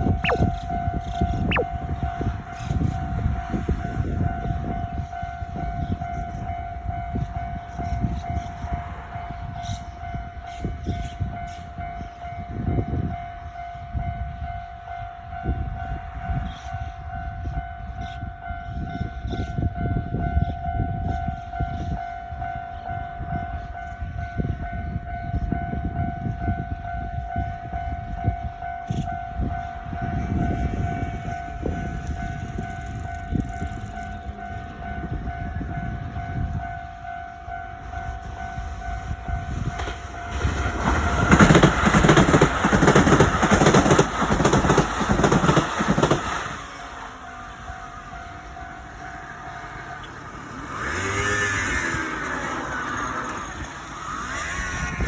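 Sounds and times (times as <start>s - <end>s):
train rumble: 0.0s - 55.0s
wheels clicking over track: 39.7s - 47.6s.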